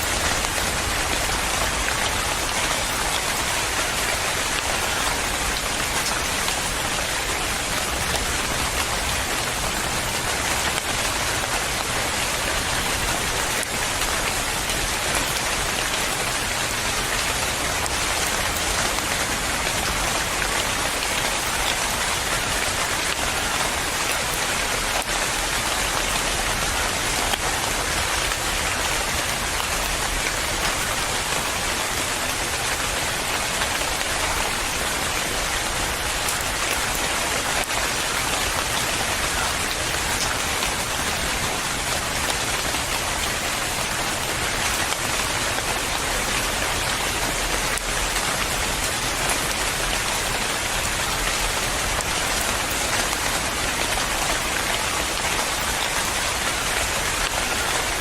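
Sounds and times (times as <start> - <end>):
steady rain pattering: 0.0 - 58.0.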